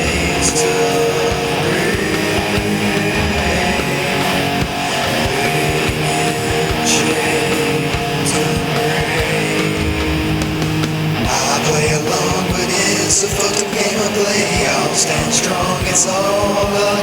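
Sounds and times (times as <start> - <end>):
cymbal crashes: 0.0 - 4.6, 9.8 - 11.7
nu-metal instrumental music: 0.0 - 17.0.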